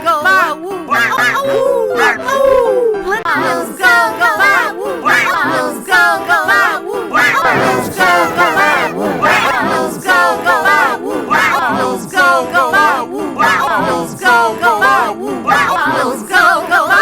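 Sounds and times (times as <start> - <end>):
warbling processed singing voice: 7.3 - 11.0.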